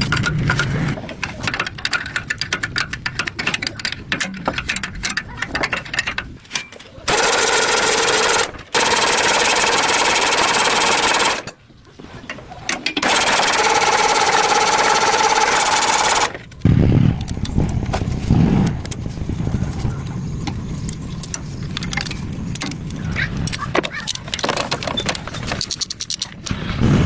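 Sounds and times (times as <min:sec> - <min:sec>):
mechanical clicking and rattling: 0:00.0 - 0:11.6, 0:12.7 - 0:19.2, 0:20.4 - 0:26.7
power tool motor whining: 0:13.0 - 0:17.4.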